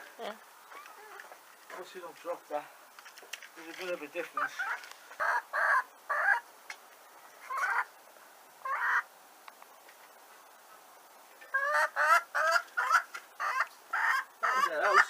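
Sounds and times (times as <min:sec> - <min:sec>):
poultry calling: 0:00.7 - 0:01.4, 0:04.2 - 0:06.5, 0:07.3 - 0:07.9, 0:08.6 - 0:09.1, 0:11.5 - 0:15.0.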